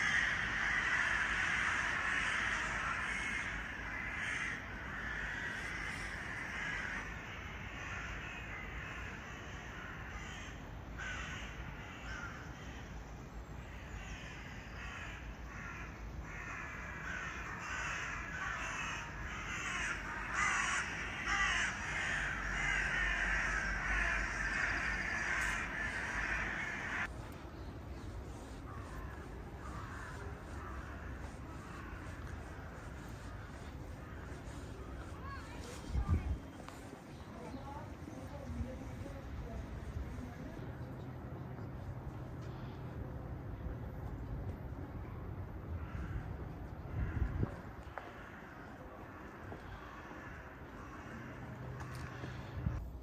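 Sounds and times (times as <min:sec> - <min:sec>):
crows cawing: 0:00.0 - 0:12.8, 0:13.7 - 0:35.8, 0:45.8 - 0:46.2, 0:46.9 - 0:52.6.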